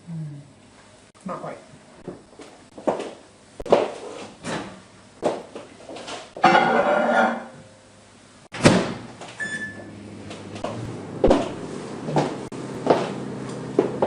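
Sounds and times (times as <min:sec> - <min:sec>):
appliance door shutting: 0:08.5 - 0:09.9
short electronic beep: 0:09.4 - 0:09.9.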